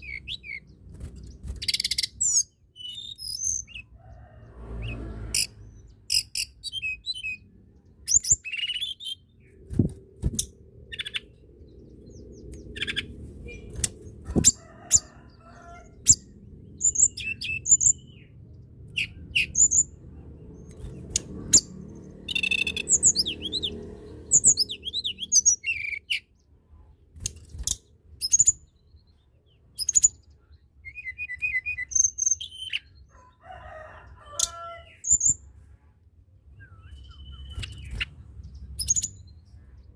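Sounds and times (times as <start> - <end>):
songbird chirping and whistling: 1.6 - 3.9, 6.1 - 7.4, 8.1 - 9.9, 22.3 - 26.3, 30.8 - 32.9, 36.5 - 38.1.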